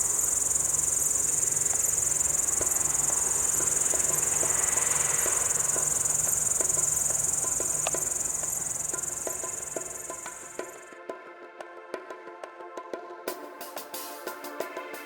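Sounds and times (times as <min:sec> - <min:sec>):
faint clicks: 0:00.0 - 0:10.7
crickets chirping: 0:00.0 - 0:10.8.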